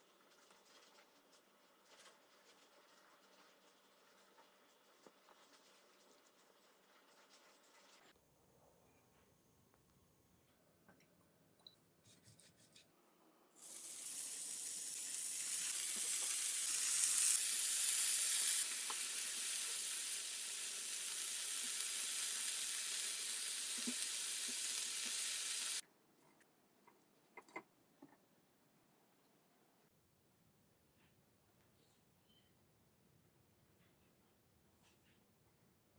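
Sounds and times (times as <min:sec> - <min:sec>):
seafood sizzling in oil: 0:13.6 - 0:25.8.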